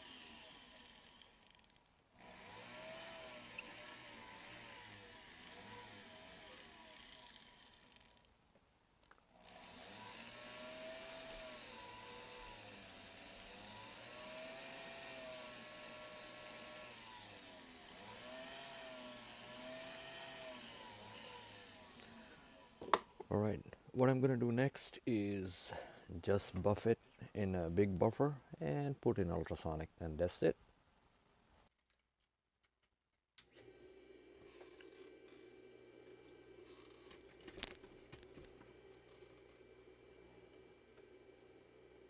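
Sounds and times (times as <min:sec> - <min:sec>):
rotary tool motor running: 0:00.0 - 0:08.3, 0:09.4 - 0:23.3, 0:34.4 - 0:39.9.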